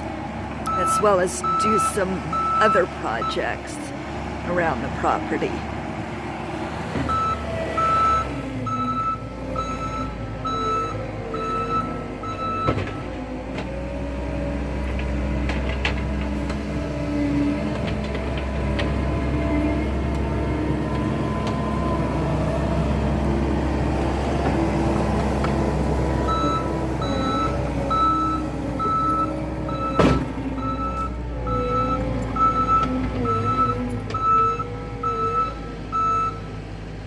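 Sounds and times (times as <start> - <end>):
skid steer diesel engine: 0.0 - 37.0
backup alarm beeping: 0.7 - 3.7, 26.3 - 36.4.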